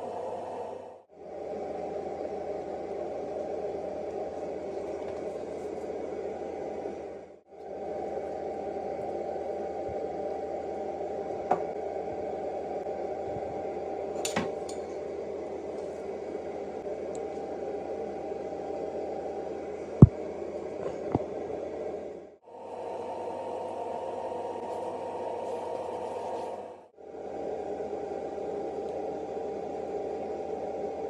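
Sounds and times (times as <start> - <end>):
steady hum: 0.0 - 31.0.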